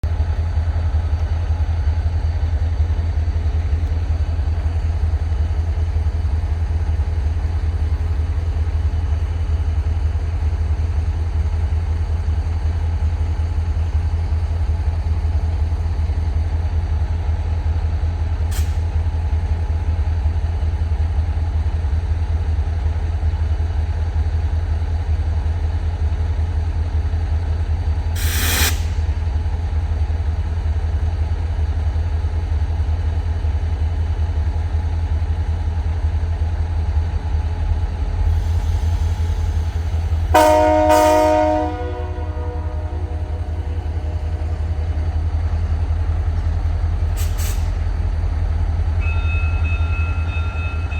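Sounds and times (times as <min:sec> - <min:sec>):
diesel locomotive engine idling: 0:00.0 - 0:50.9
hiss of released air: 0:18.5 - 0:18.9, 0:28.2 - 0:29.2, 0:47.2 - 0:47.8.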